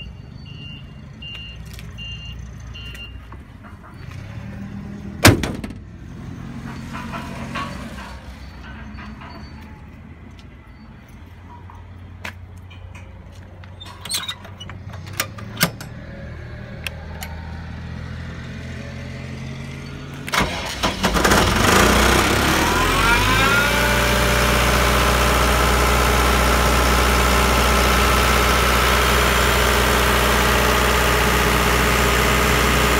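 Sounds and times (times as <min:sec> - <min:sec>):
air compressor diesel engine: 0:14.4 - 0:32.9.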